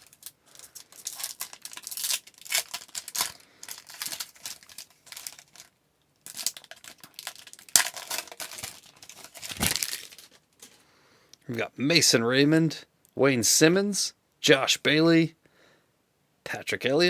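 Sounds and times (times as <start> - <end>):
wrapper crinkling and tearing: 0.0 - 10.8
wrapper sharp snap: 6.3 - 10.8.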